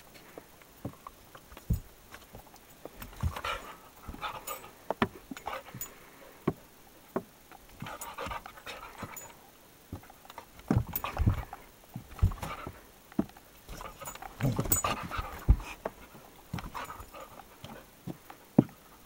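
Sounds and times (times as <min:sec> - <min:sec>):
bodies knocking and scuffling: 0:00.8 - 0:05.9, 0:09.9 - 0:18.8
heavy thumps: 0:09.9 - 0:18.8.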